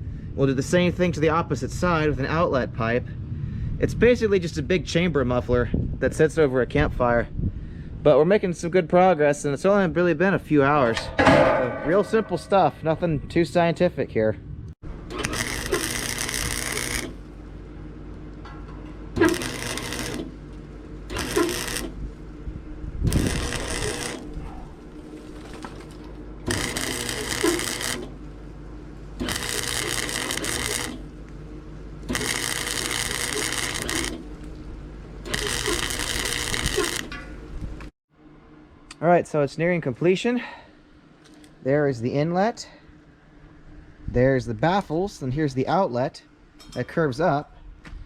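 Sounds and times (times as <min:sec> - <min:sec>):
welder steady hum: 0:14.6 - 0:39.0
welding arc crackle: 0:15.2 - 0:17.5, 0:19.2 - 0:22.0, 0:23.1 - 0:28.3, 0:29.1 - 0:31.4, 0:32.0 - 0:37.7.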